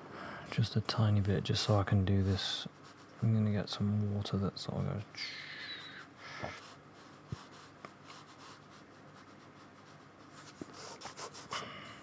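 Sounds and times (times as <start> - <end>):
paintbrush stroking paper: 1.2 - 3.3, 5.2 - 11.5.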